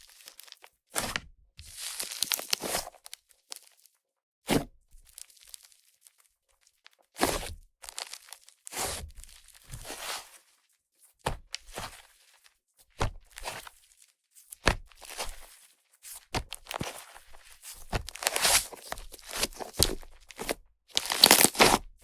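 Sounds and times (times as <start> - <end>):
slime squished by hand: 17.7 - 21.8.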